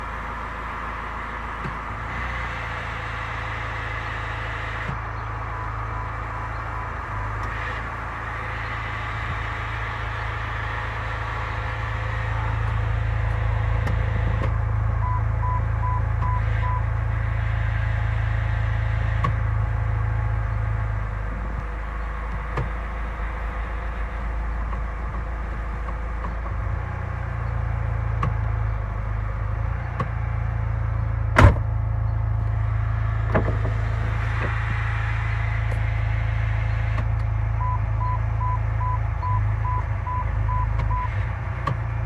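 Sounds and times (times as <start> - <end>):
car engine humming: 0.0 - 42.0
transmission whining: 0.0 - 42.0.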